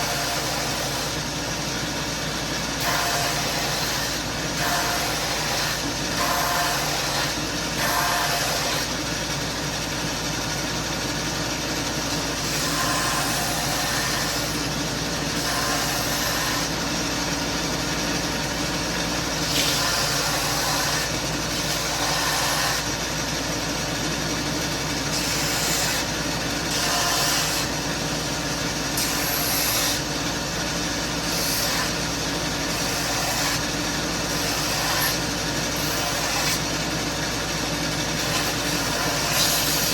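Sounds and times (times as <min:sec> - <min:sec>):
belt and disc sander running: 0:00.0 - 0:39.9.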